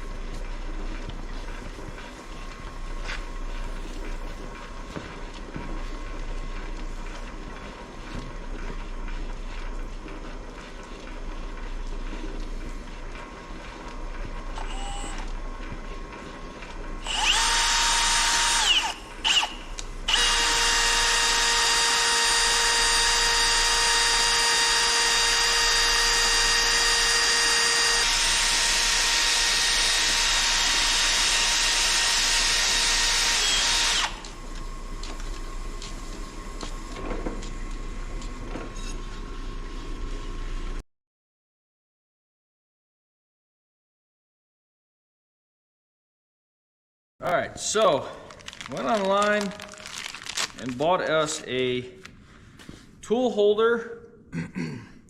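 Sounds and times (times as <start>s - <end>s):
electric power tool whining: 14.5s - 15.3s, 17.0s - 36.8s.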